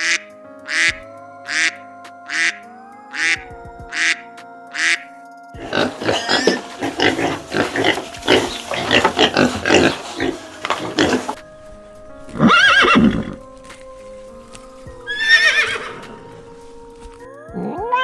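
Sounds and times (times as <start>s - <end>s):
pigs grunting and squealing: 0.0s - 2.6s, 5.6s - 11.4s
soft background music: 0.0s - 18.0s.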